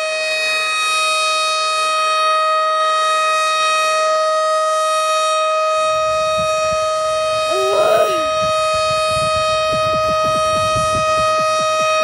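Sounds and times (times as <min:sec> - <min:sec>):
warning siren steady tone: 0:07.5 - 0:08.3.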